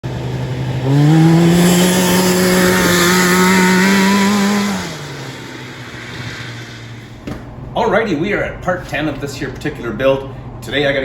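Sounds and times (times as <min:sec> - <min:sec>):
two-stroke engine revving: 0:00.0 - 0:07.2.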